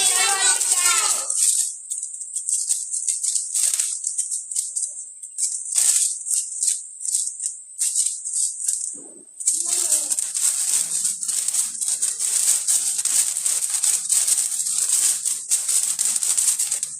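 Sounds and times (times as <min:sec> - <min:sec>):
background music with shaker percussion: 0:00.0 - 0:16.9.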